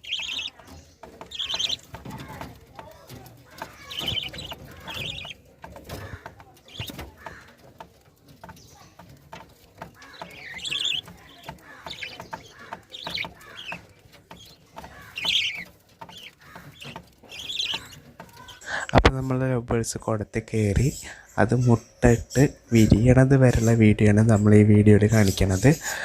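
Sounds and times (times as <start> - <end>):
lovebirds chirping: 0.0 - 26.0
small clicks and scratches: 0.1 - 18.6.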